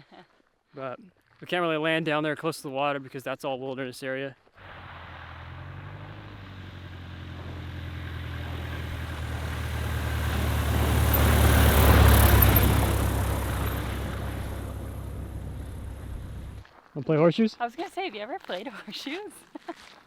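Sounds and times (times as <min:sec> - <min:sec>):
propeller airplane flying past: 0:04.6 - 0:16.6.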